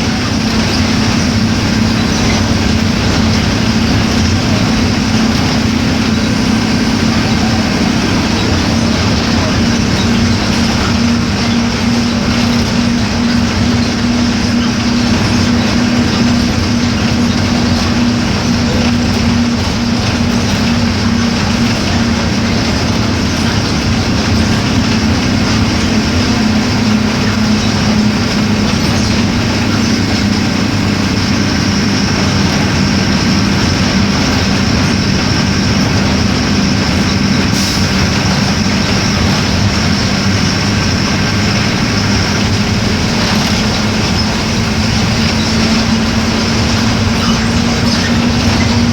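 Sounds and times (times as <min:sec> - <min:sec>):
diesel bus engine droning: 0:00.0 - 0:48.9
vehicle rattling: 0:00.0 - 0:48.9.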